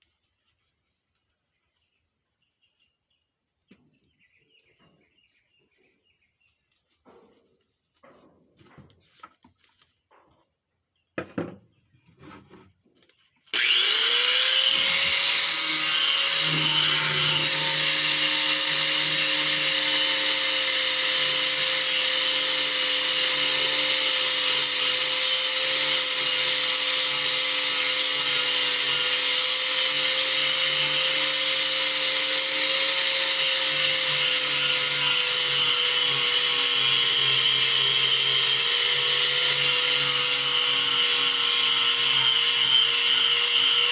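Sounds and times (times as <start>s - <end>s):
power sander whining on wood: 13.5s - 43.9s.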